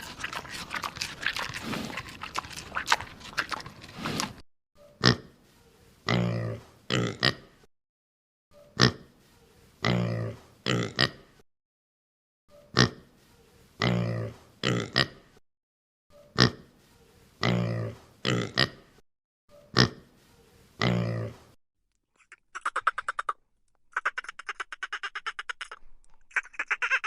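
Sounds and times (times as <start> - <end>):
animal snorting and grunting: 0.0 - 4.4, 13.8 - 15.2, 17.4 - 18.8, 20.8 - 21.6.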